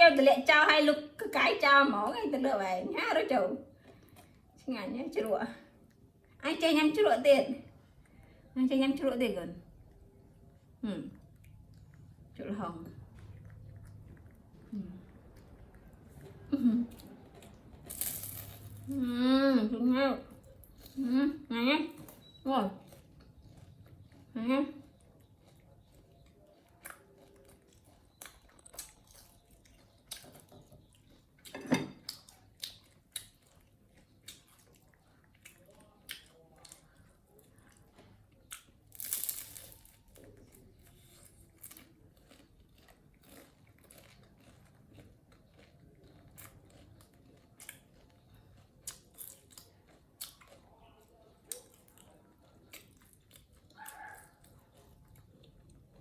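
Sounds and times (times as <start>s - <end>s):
monkeys chewing and crunching food: 9.7s - 18.9s, 22.0s - 56.0s.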